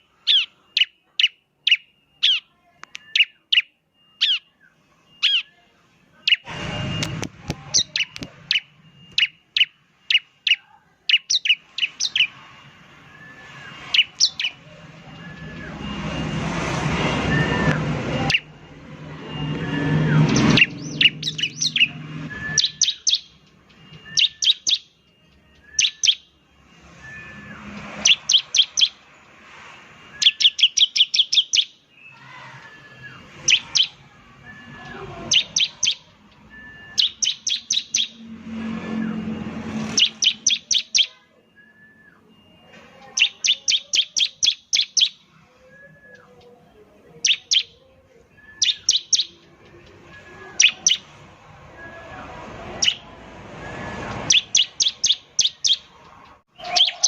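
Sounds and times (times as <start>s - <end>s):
bird chipping calls: 0.0s - 4.6s, 5.2s - 5.6s, 6.2s - 16.4s, 19.3s - 26.4s, 27.0s - 29.1s, 30.1s - 41.2s, 43.0s - 45.3s, 47.1s - 57.0s.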